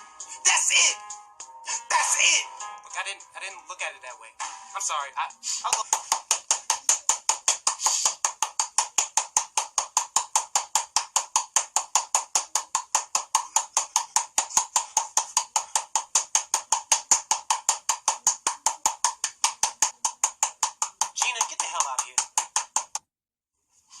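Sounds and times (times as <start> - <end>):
rapid woodblock-like ticking: 5.2 - 23.0.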